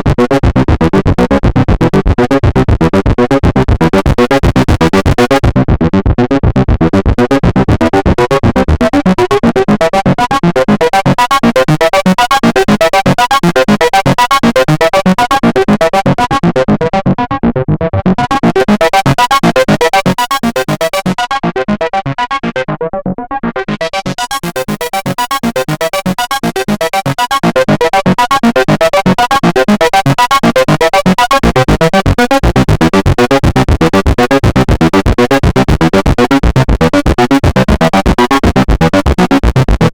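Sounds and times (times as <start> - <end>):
synthesizer repeating note sequence: 17.7 - 39.9.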